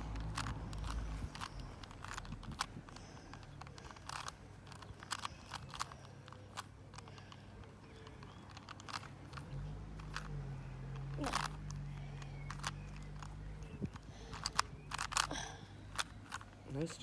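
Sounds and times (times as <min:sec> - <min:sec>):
puzzle cube clicking: 0:00.0 - 0:16.9
low steady hum: 0:00.0 - 0:17.0.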